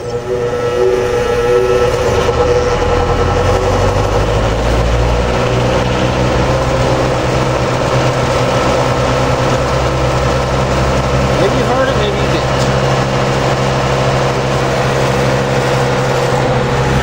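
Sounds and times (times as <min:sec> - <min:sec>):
box fan motor hum: 0:00.0 - 0:17.0.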